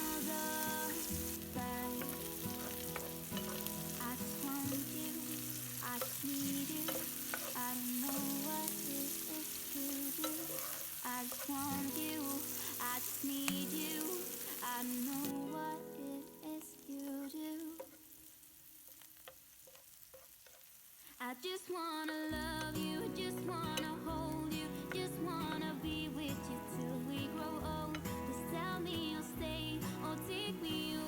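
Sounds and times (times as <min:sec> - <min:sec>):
background pop song: 0:00.0 - 0:18.2, 0:21.2 - 0:31.0
food sizzling in skillet: 0:00.0 - 0:31.0.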